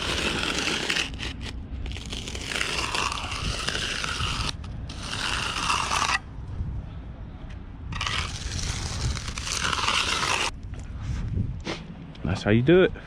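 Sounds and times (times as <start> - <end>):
steel groover scraping wet concrete: 0.0 - 6.3, 8.0 - 10.5.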